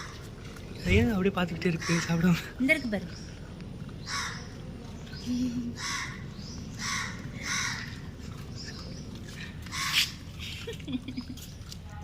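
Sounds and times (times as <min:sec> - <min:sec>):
bird cawing: 0:01.7 - 0:02.2, 0:04.0 - 0:04.6, 0:05.8 - 0:08.1.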